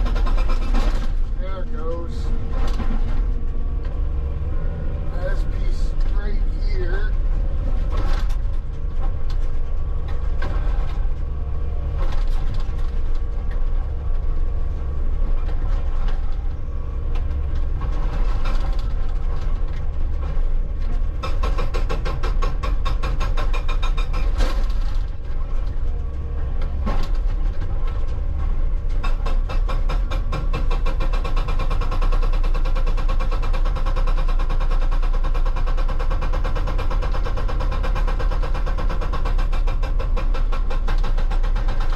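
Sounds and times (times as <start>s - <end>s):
hydraulic hammer pounding rock: 0.0s - 3.4s, 5.2s - 9.2s, 20.2s - 25.2s, 28.8s - 41.9s
diesel engine under load: 0.0s - 41.9s.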